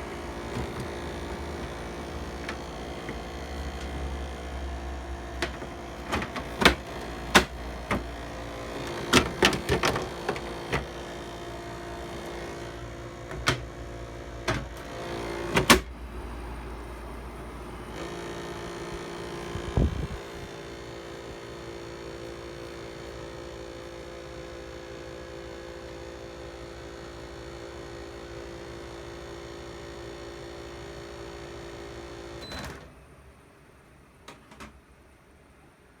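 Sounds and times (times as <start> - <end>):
air conditioner humming: 0.0 - 36.0
air conditioner switch clicks: 0.4 - 11.0, 13.2 - 13.8.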